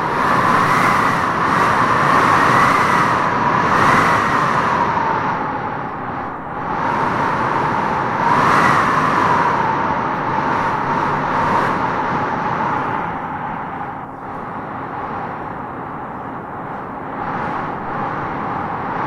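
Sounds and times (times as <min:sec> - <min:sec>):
howling wind gusts: 0:00.0 - 0:19.0.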